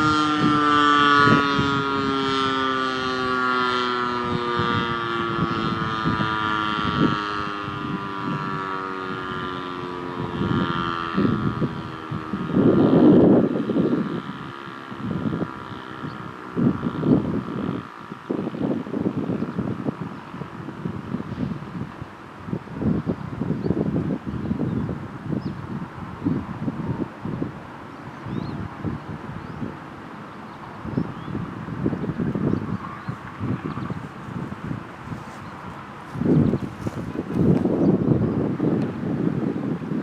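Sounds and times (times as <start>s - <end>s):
rotating siren winding down: 0.0s - 21.7s
wind rumble on microphone: 0.0s - 40.0s.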